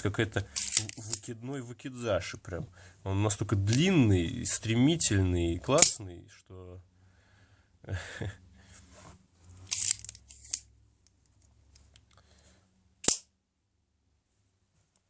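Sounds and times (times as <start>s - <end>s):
knife handling scrapes: 9.0s - 10.7s
sharp knife blade click: 13.0s - 13.3s.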